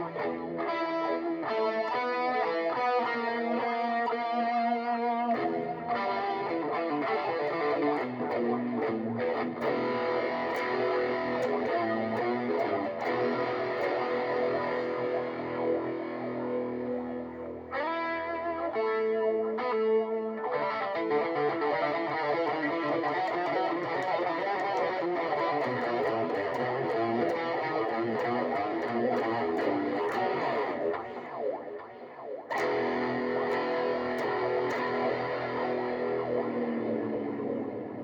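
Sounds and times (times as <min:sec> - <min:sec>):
overdriven electric guitar: 0:00.0 - 0:38.0.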